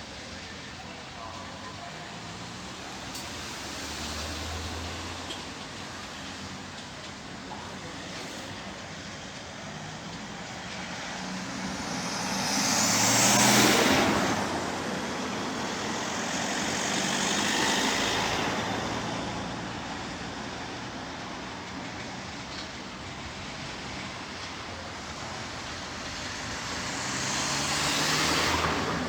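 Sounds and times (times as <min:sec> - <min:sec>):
vehicle passing by: 0:10.8 - 0:19.8, 0:25.9 - 0:29.0.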